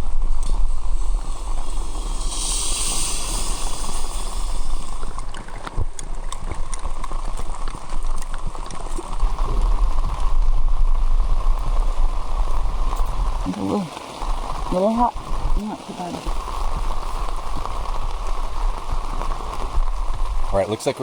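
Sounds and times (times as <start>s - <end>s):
low rumble: 0.0s - 13.5s
rain pattering on a tarp: 0.0s - 21.0s
brief hiss: 0.4s - 5.6s.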